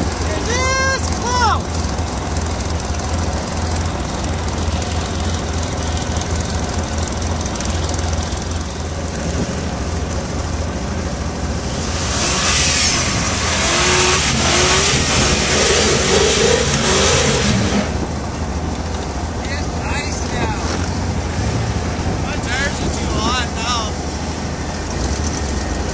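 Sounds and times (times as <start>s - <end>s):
truck engine revving: 0.0s - 25.9s
wavering rising whine: 9.3s - 18.5s
rushing hiss: 11.6s - 17.9s.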